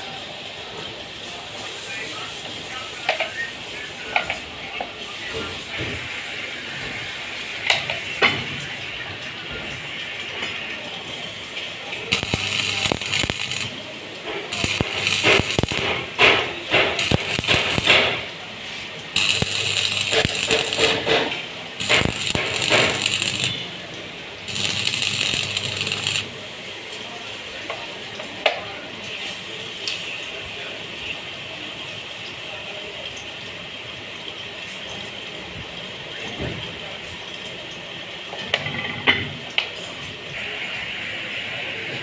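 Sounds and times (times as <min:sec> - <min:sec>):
bursts of hissing: 0:12.1 - 0:13.9, 0:14.5 - 0:18.4, 0:19.2 - 0:23.7, 0:24.5 - 0:26.4.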